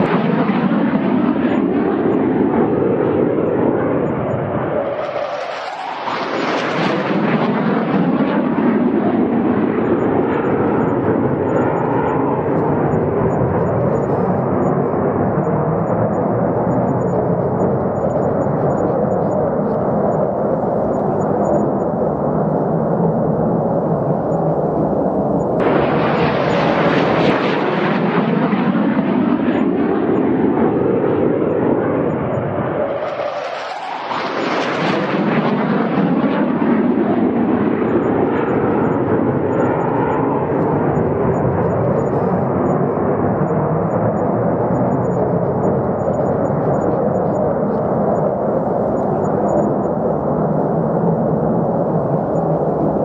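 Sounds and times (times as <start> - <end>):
fighter jet engines roaring: 0.0 - 53.0.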